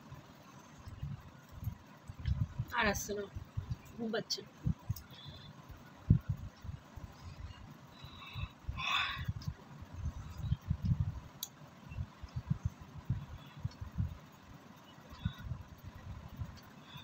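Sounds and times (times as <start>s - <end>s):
low rumbling thumps on microphone: 2.2s - 2.7s.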